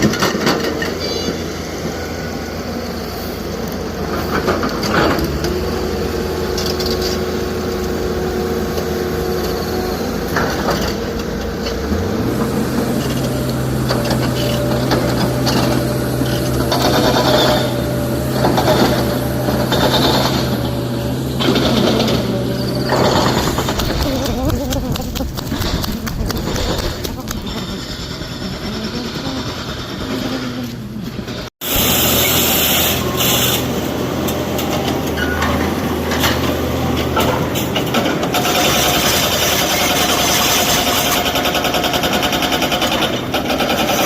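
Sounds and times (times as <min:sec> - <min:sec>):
heavy diesel engine running: 0:00.0 - 0:44.0
bursts of rattling: 0:18.4 - 0:30.6.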